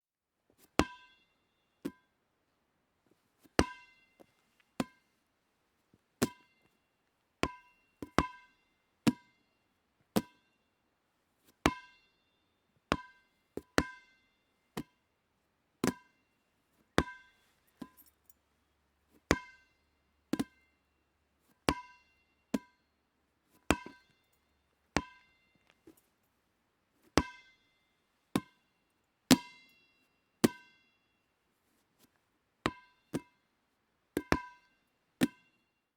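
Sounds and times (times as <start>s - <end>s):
ball bouncing with sharp smacks: 20.4s - 20.6s, 23.7s - 24.1s, 34.2s - 34.5s.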